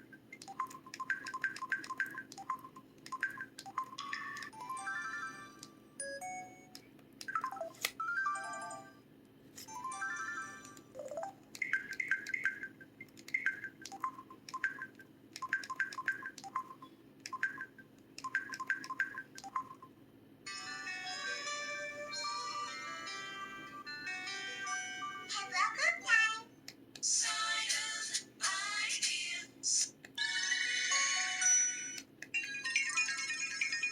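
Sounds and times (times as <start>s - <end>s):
quick repeated blips: 0.0s - 4.6s, 6.8s - 8.0s, 11.0s - 19.9s
melodic phone tone: 0.0s - 9.0s, 9.7s - 12.8s
mobile phone electronic chimes: 0.5s - 9.0s.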